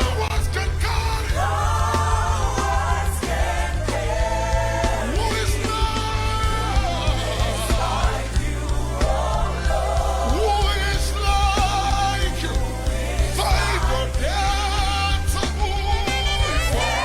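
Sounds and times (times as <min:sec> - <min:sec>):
gospel band playing: 0:00.0 - 0:17.0.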